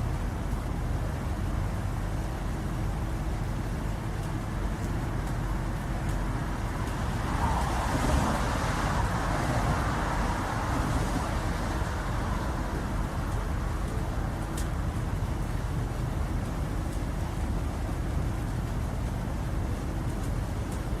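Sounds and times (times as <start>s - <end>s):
highway traffic hum: 0.0s - 21.0s
vehicle passing: 7.0s - 13.7s.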